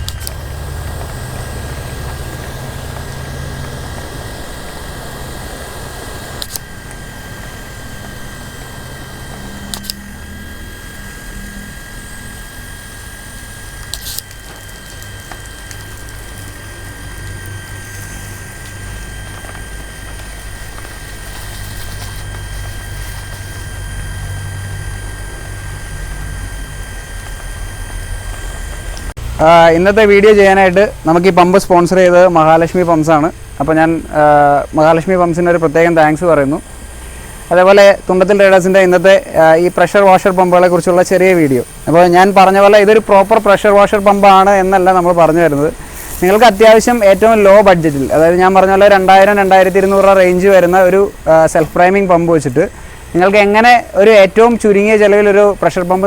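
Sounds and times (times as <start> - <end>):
short clicks: 0.0 - 1.4, 6.4 - 7.0, 9.7 - 10.1
electric pump whining: 0.0 - 56.0
water jet spraying: 0.0 - 56.0.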